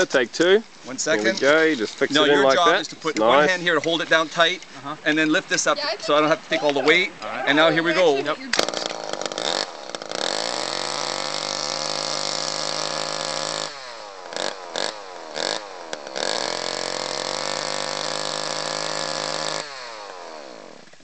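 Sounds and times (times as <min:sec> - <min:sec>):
chainsaw engine revving: 0:07.2 - 0:21.0.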